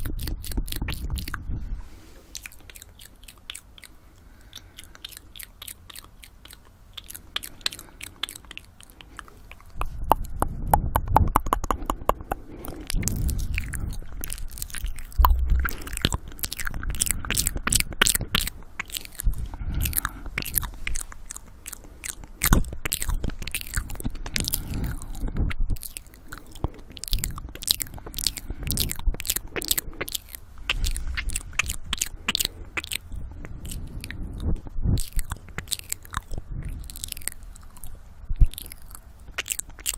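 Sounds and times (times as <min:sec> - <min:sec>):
wet tongue and lip clicks: 0:00.0 - 0:39.9
heavy breathing on microphone: 0:12.2 - 0:16.4, 0:19.2 - 0:22.8, 0:23.9 - 0:26.9.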